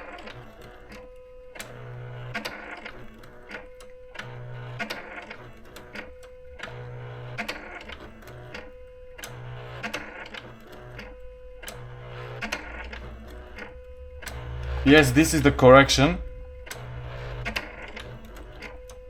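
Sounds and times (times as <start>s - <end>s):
typewriter motor hum: 0.0s - 14.8s
held tone: 12.6s - 18.8s.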